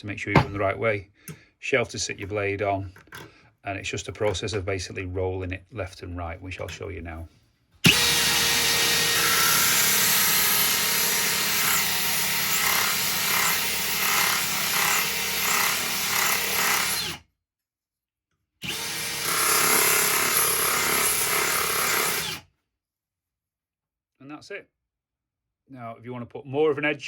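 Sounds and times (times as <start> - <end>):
drill grinding metal blade: 7.8 - 17.2, 18.6 - 22.5.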